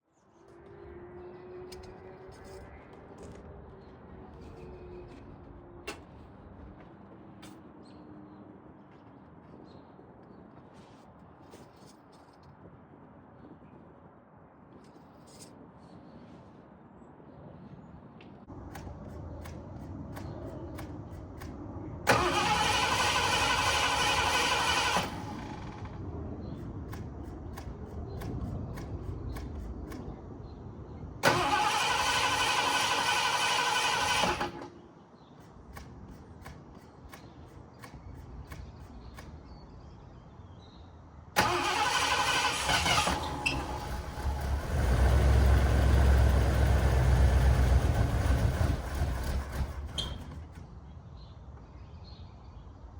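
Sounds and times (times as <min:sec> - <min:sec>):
starter motor cranking: 0:22.1 - 0:26.0, 0:31.2 - 0:34.7, 0:41.4 - 0:50.6
car engine running: 0:43.4 - 0:50.6.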